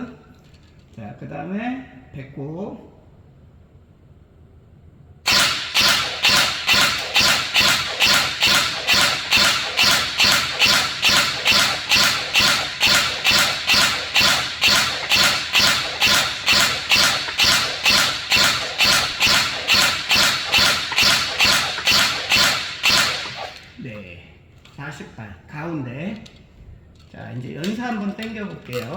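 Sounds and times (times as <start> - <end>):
airsoft gun firing single shots: 5.3 - 23.8.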